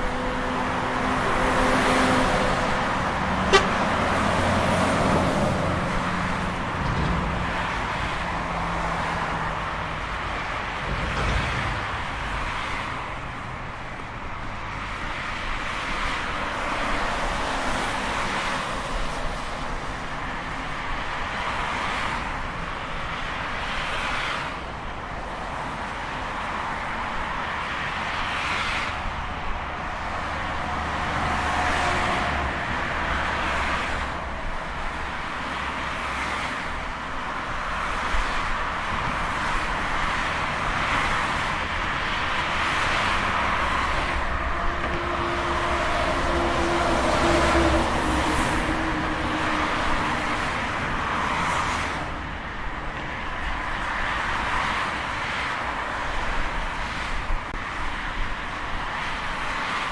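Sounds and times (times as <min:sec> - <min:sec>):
cars and trucks passing: 0:00.0 - 0:59.9
highway traffic: 0:00.0 - 0:59.9.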